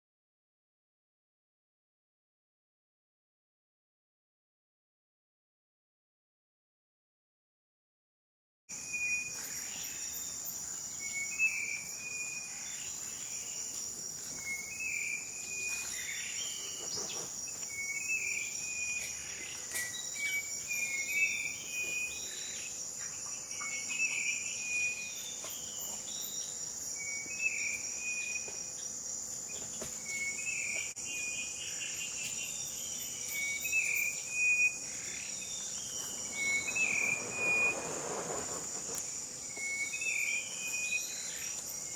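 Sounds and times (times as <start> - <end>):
insects droning: 8.7 - 41.9
short insect calls: 8.8 - 41.9
rustling: 35.8 - 39.3.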